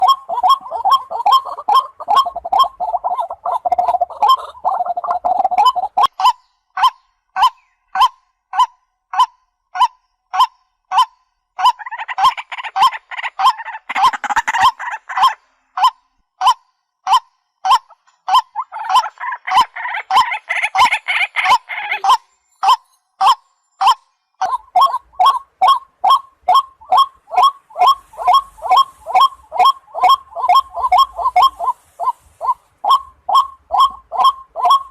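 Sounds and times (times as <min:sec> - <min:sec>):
rough overlapping bird chatter: 0:00.0 - 0:08.0, 0:17.4 - 0:34.9
waterhen calling: 0:00.0 - 0:08.1, 0:11.6 - 0:15.9, 0:17.1 - 0:34.9.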